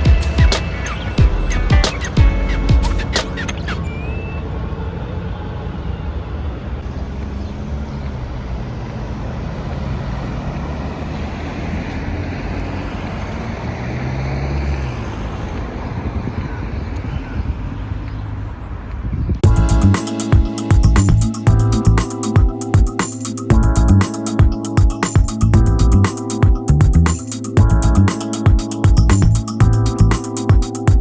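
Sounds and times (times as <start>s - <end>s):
loud music: 0.0s - 3.6s, 19.4s - 31.0s
road traffic hum: 0.0s - 31.0s.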